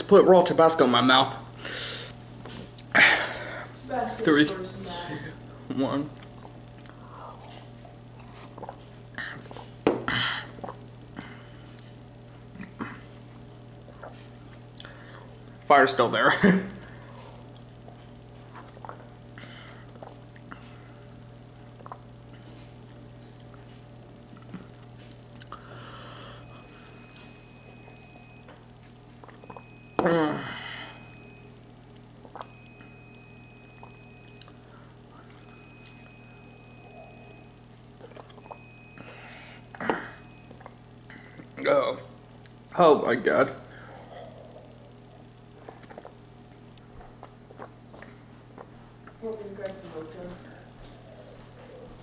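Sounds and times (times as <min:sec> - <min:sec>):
steady low hum: 0:00.0 - 0:52.0
person breathing hard: 0:25.6 - 0:26.5.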